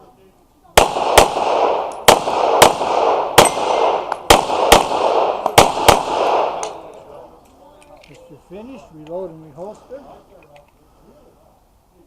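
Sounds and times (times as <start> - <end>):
pistol shots echoing: 0.8 - 7.0.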